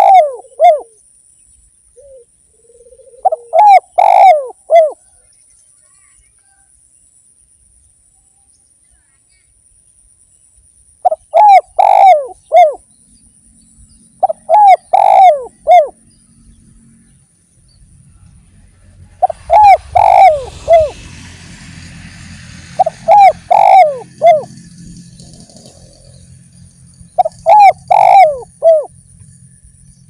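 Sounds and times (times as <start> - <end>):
dove cooing: 0.0 - 1.0, 2.0 - 5.1, 11.0 - 12.8, 14.2 - 16.1, 19.1 - 21.2, 22.6 - 26.2, 27.0 - 29.4.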